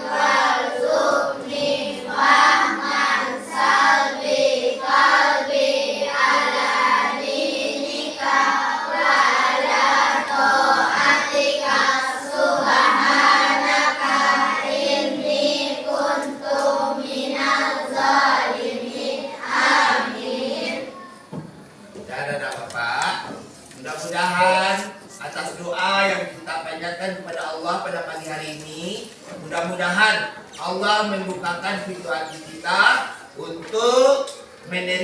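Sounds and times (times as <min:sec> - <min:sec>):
children chanting in unison: 0:00.0 - 0:21.6.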